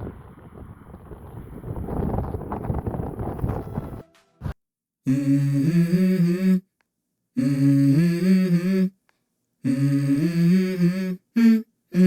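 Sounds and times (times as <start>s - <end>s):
hummed vocal melody: 5.0s - 6.8s, 7.4s - 12.0s.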